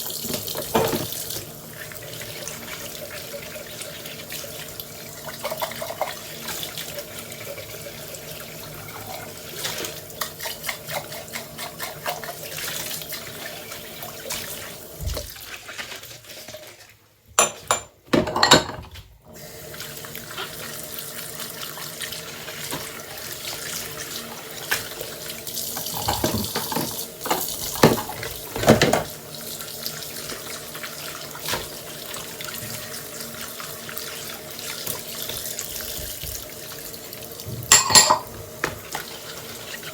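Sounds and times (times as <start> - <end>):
tap water running into sink: 0.0 - 39.9
dishes clinking and knocking: 0.3 - 1.1, 17.4 - 19.0, 25.8 - 29.1, 37.5 - 38.9.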